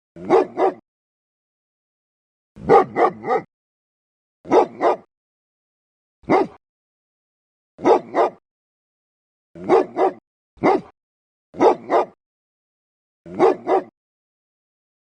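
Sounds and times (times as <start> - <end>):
dog barking: 0.2 - 0.8, 2.6 - 3.5, 4.4 - 5.1, 6.2 - 6.6, 7.8 - 8.4, 9.6 - 11.0, 11.6 - 12.2, 13.3 - 14.0.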